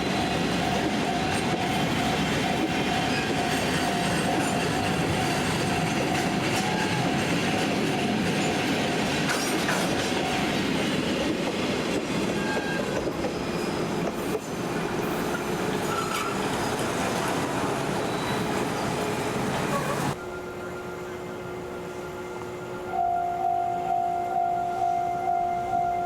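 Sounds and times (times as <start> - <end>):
railway wagons rumbling over rails: 0.0 - 26.0
wheel squeal: 12.4 - 14.5, 15.3 - 16.8, 18.0 - 19.0.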